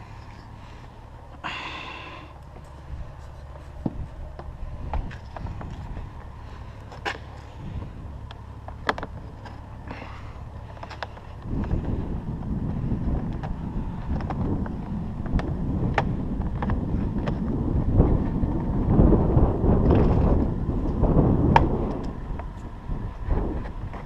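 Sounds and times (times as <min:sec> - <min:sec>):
wind buffeting microphone: 0:00.0 - 0:24.0
handling clicks and knocks: 0:08.2 - 0:09.7.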